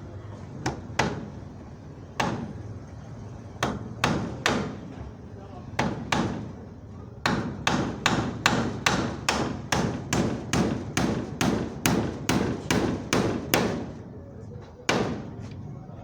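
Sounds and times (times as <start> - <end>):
hammer driving nails into wood: 7.3 - 13.9.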